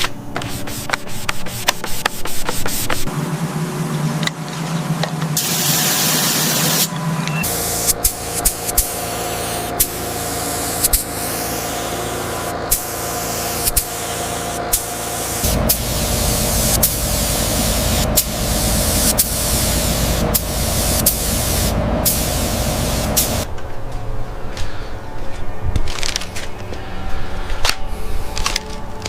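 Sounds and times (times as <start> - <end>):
mechanical hum: 0.0 - 29.0
low rumble: 3.1 - 23.6
hissing spray: 5.4 - 23.5.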